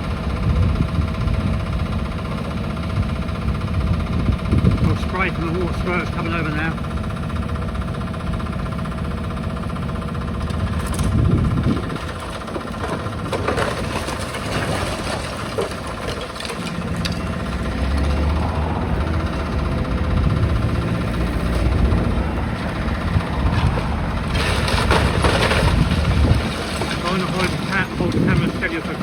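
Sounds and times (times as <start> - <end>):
excavator diesel engine running: 0.0 - 29.0
masonry crunching and knocking: 10.4 - 18.7, 19.4 - 29.0.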